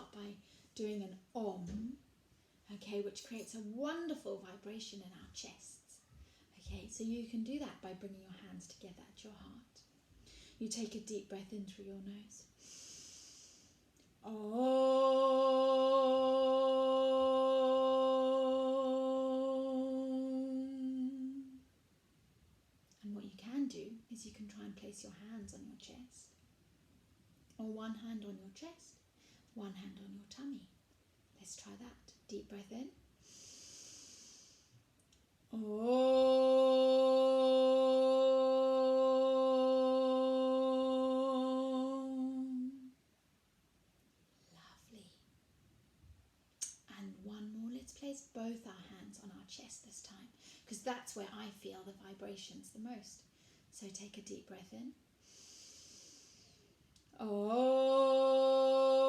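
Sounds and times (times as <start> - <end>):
woman breathing in through nose: 12.6 - 13.8, 33.2 - 34.8, 50.4 - 50.7, 55.2 - 56.7
person chanting om: 14.2 - 21.6, 35.5 - 42.9, 57.2 - 59.0.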